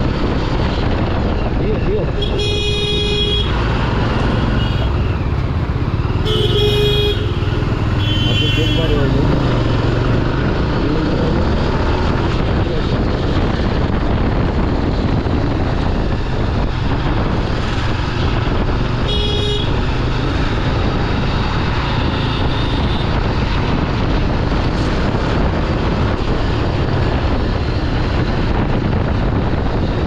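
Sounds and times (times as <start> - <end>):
motorcycle engine: 0.0 - 30.0
road traffic: 0.0 - 30.0
wind rushing over microphone: 0.0 - 30.0
vehicle horn toot: 2.2 - 3.6, 4.4 - 5.0, 6.2 - 9.2, 19.0 - 19.8, 22.1 - 23.1.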